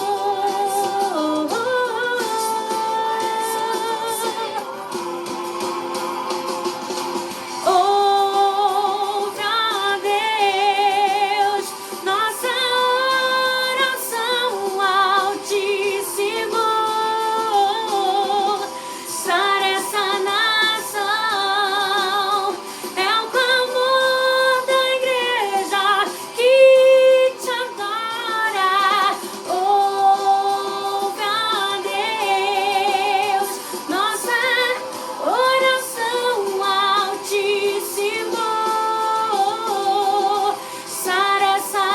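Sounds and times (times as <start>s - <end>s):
woman singing gospel song: 0.0s - 41.9s.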